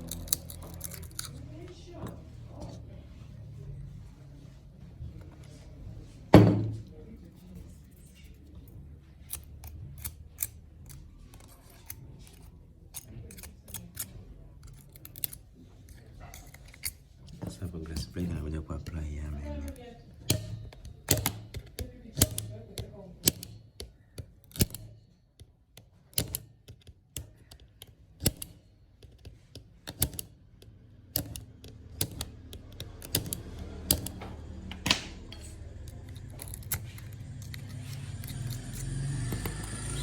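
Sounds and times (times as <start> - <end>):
small repair tools clicking: 0.0 - 1.4, 9.2 - 17.0, 19.6 - 40.0.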